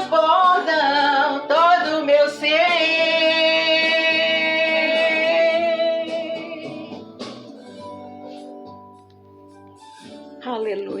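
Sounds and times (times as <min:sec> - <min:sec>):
woman singing: 0:00.0 - 0:07.0
instrumental accompaniment: 0:00.0 - 0:11.0.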